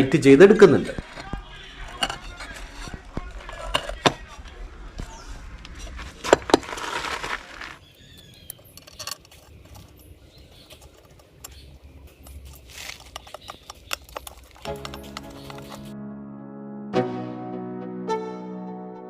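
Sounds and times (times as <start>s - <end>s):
metal clicks and clinks: 8.2s - 15.9s.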